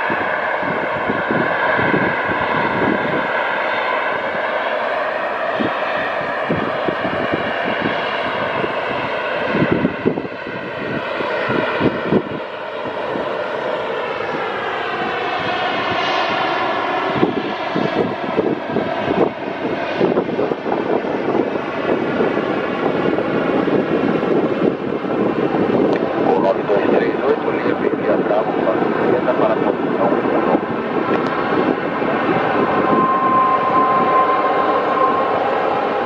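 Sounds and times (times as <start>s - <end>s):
jet engines whining: 0.0s - 36.0s
wind on microphone rumble: 0.0s - 36.0s.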